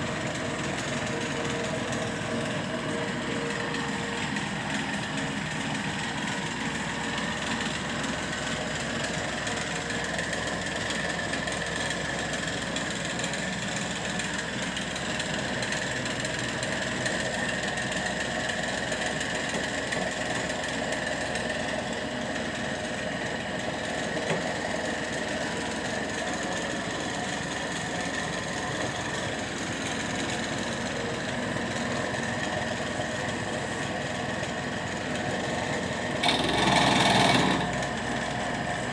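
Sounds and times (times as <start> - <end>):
drill press motor whine: 33.4 - 38.9.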